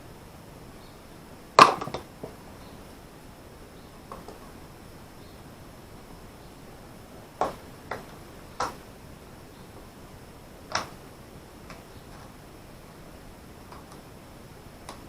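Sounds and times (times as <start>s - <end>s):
sharp clicks of small hard parts: 7.4s - 8.8s, 10.7s - 11.0s.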